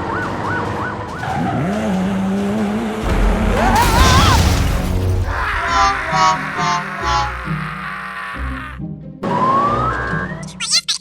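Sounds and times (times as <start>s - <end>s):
siren: 0.0s - 1.3s, 9.2s - 10.6s
tire squeal and skid: 0.0s - 2.7s
background music: 0.0s - 10.6s.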